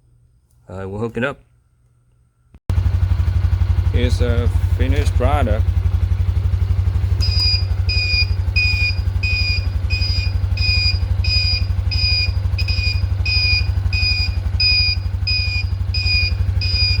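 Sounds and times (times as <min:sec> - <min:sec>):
motorcycle engine idling: 0:02.7 - 0:17.0
turn signal buzzer beeping: 0:05.1 - 0:17.0.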